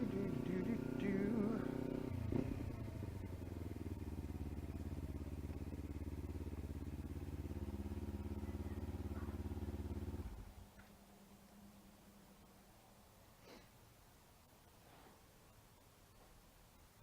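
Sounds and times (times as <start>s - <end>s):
motorcycle engine idling: 0.0s - 10.9s.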